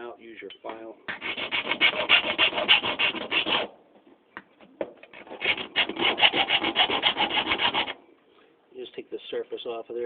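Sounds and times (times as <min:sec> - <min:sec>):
hand file rasping on metal: 0:01.1 - 0:03.7, 0:05.2 - 0:08.0.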